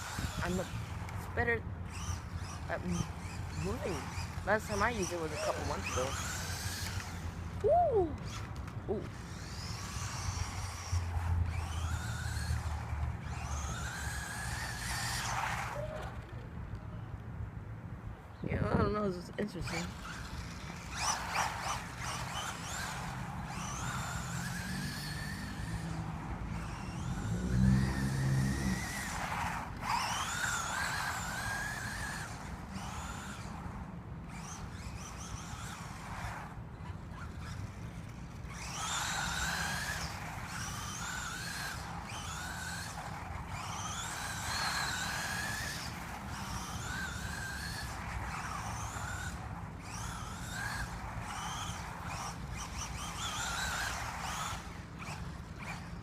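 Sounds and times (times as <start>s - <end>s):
electric motor whining: 0.0s - 16.4s, 19.4s - 56.0s.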